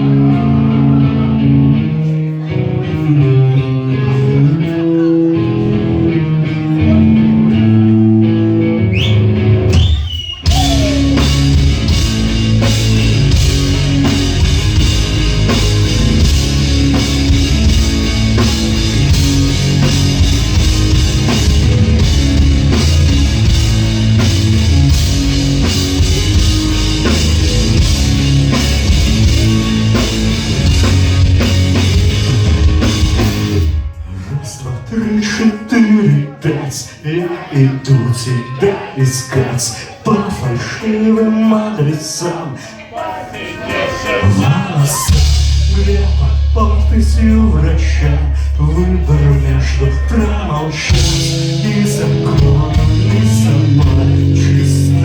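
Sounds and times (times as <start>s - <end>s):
guitar slide: 0.0s - 36.4s
live rock band playing: 0.0s - 55.0s.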